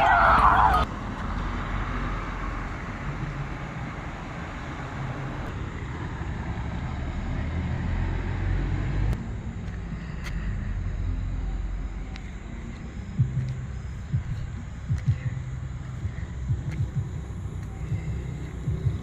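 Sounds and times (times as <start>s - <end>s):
low outdoor rumble: 0.0s - 19.0s
faint clicks: 12.1s - 13.6s.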